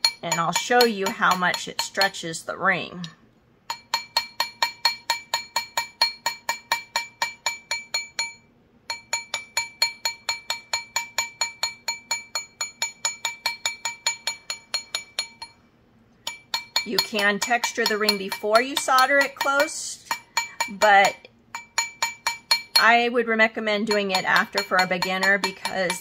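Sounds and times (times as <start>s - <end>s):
hammer tapping metal ring: 0.0s - 2.3s, 3.0s - 15.6s, 16.2s - 26.0s.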